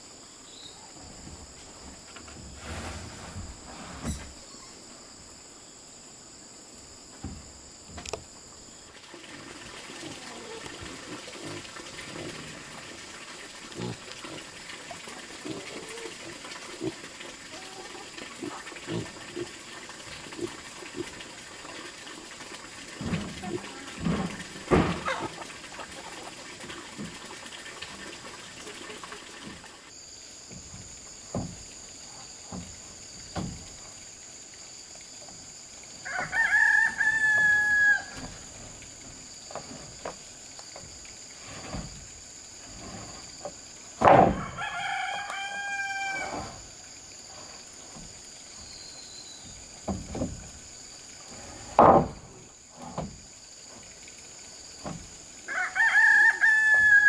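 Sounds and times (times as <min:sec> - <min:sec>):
rooster crowing: 0:36.0 - 0:38.2, 0:44.3 - 0:46.5, 0:55.5 - 0:57.0.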